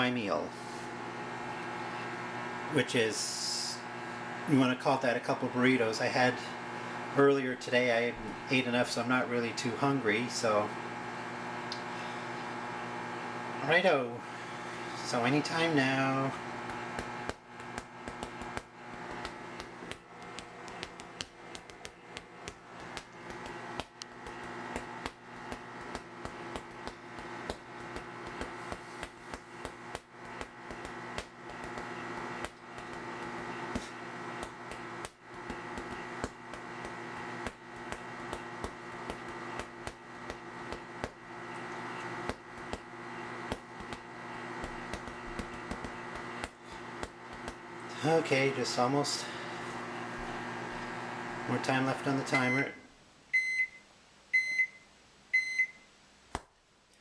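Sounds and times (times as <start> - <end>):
microwave oven humming: 0.0 - 55.9.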